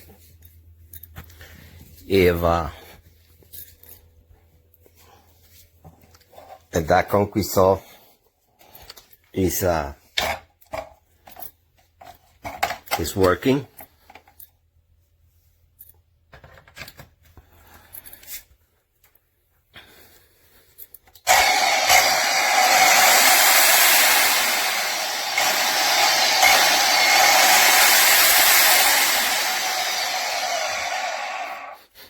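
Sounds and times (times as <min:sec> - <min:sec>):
electric concrete saw running: 0:21.3 - 0:31.8.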